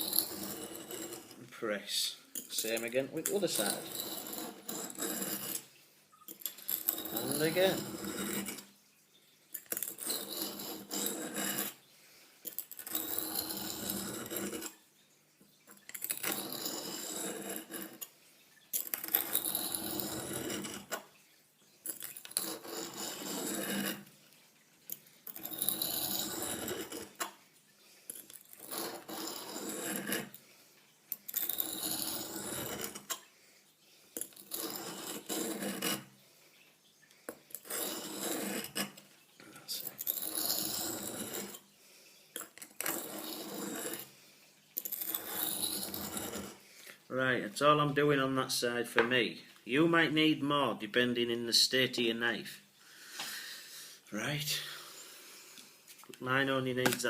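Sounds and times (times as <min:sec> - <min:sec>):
knife grinding on oilstone: 0:00.0 - 0:08.7, 0:09.5 - 0:14.8, 0:15.7 - 0:21.1, 0:21.8 - 0:24.1, 0:24.8 - 0:27.4, 0:28.1 - 0:30.4, 0:31.1 - 0:33.3, 0:34.2 - 0:36.1, 0:37.3 - 0:41.8, 0:42.4 - 0:44.2, 0:44.8 - 0:47.0.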